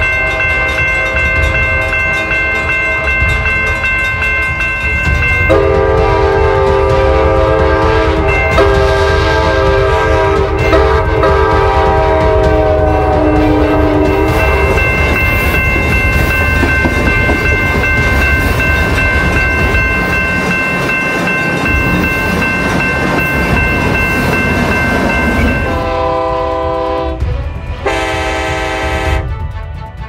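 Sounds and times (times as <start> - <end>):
train rumbling on tracks: 0.0 - 30.0
locomotive air horn blasts: 5.5 - 14.8, 25.5 - 29.5.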